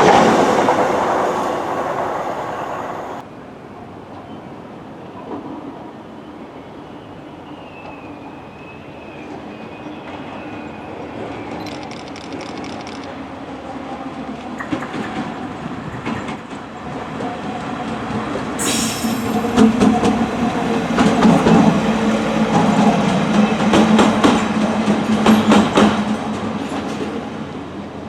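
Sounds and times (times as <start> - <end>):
diesel train engine drone: 0.0 - 3.3, 16.6 - 28.0
train wheels clacking on rail joints: 14.4 - 27.3
hiss: 18.6 - 19.6.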